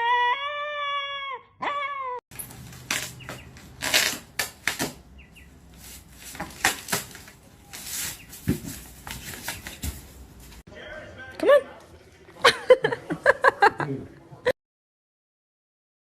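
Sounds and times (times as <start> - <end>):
pet whining cry: 0.0 - 2.2
scuffling and rustling: 2.4 - 10.6.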